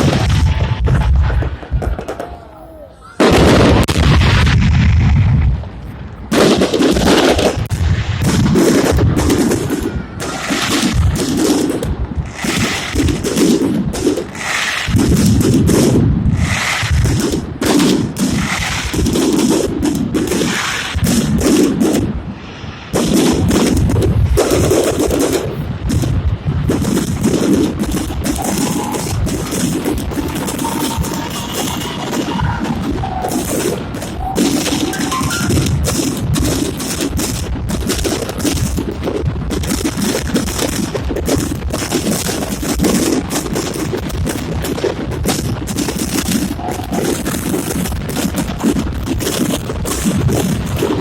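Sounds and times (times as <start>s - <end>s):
fireworks banging and crackling: 0.0s - 51.0s.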